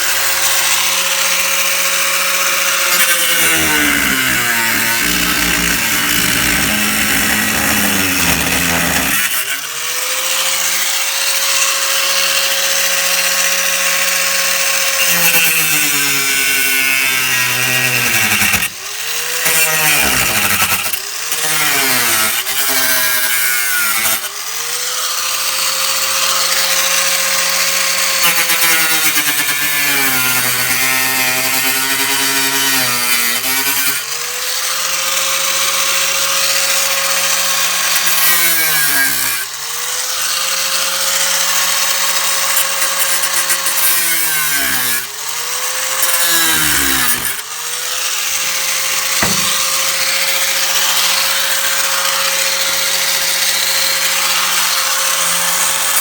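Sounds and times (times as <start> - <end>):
power tool motor whining: 0.6 - 11.0, 14.9 - 23.4, 43.2 - 50.2.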